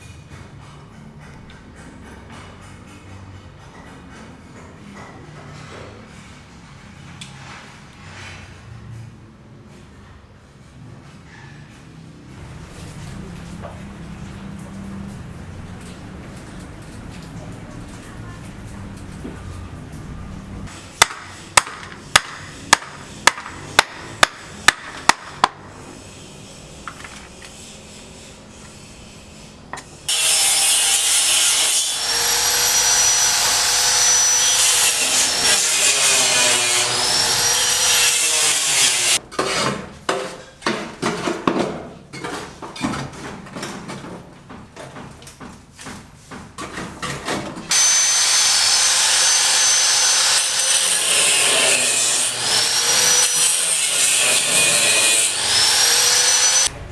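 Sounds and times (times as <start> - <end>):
rasping sawing strokes: 25.8 - 39.8, 47.7 - 56.7
power tool whining: 30.1 - 39.2, 47.7 - 56.7.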